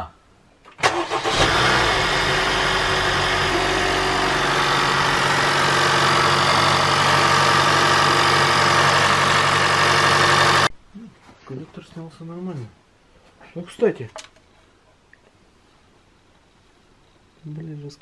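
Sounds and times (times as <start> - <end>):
car engine idling: 1.0 - 10.7.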